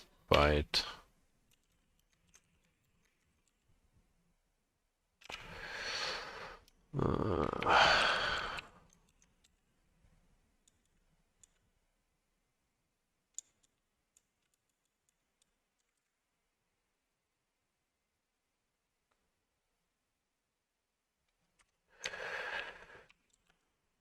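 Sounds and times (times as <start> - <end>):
person sighing heavily: 5.5 - 8.8
faint clicks: 21.2 - 23.8.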